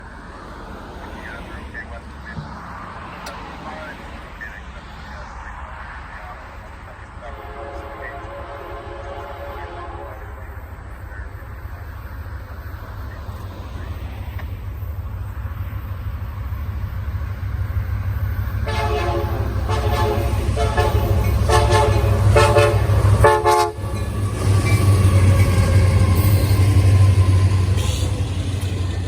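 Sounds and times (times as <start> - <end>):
locomotive engines rumbling: 0.0 - 29.0
locomotive horn blasts: 7.2 - 10.7, 18.6 - 26.7.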